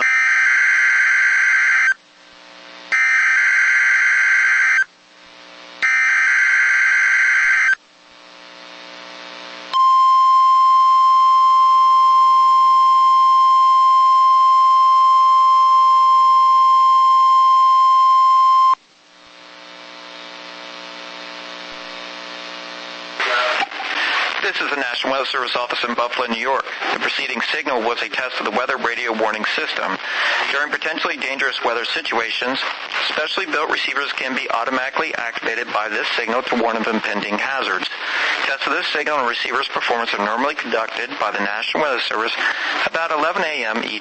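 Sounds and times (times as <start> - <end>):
radio hiss: 1.6 - 3.0, 4.0 - 9.7, 19.1 - 44.0
steady warning alarm tone: 2.9 - 4.9, 5.8 - 7.8.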